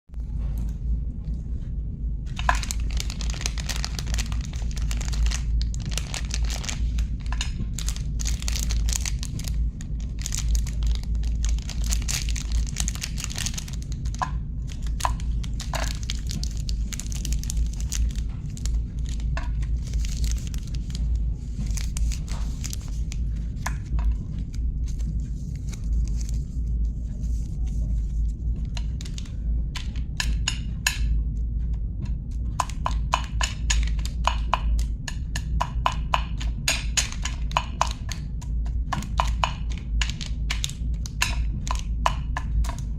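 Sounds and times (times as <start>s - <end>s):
steady low hum: 0.1s - 42.9s
wrappers crinkling and tearing: 2.4s - 23.6s.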